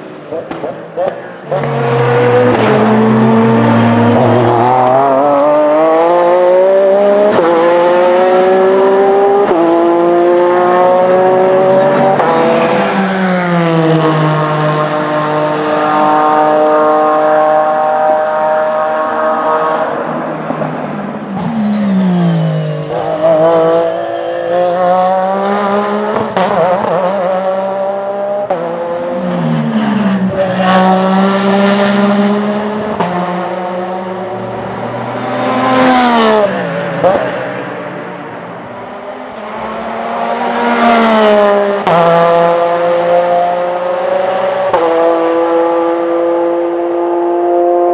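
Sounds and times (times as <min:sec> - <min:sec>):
race car engine running hard: 0:00.0 - 0:23.7.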